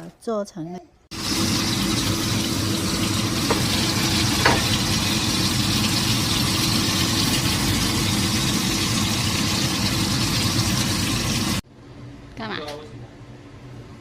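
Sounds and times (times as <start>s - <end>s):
fish deep-frying in hot oil: 1.1s - 11.6s.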